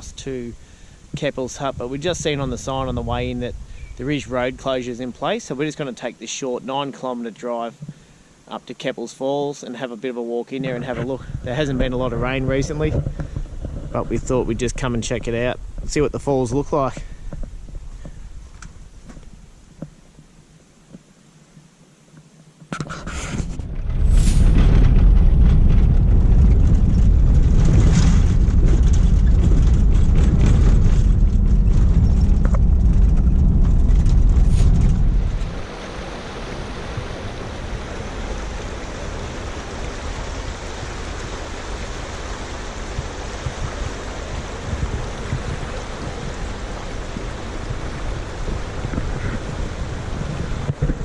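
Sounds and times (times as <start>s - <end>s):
loud low rumble: 23.6s - 39.1s
river water rushing: 34.3s - 51.0s.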